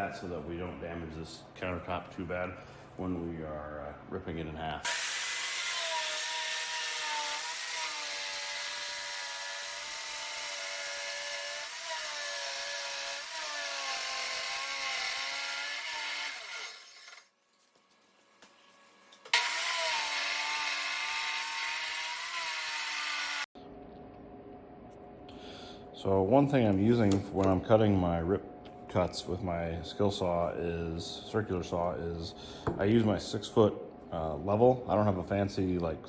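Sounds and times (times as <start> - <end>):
circular saw cutting wood: 4.8 - 17.2, 19.3 - 23.5.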